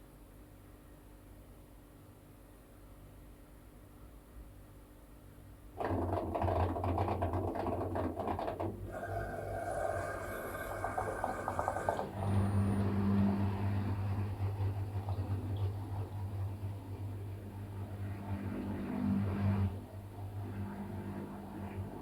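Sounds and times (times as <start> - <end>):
washing machine churning: 5.8 - 22.0
washing machine motor hum: 5.8 - 22.0.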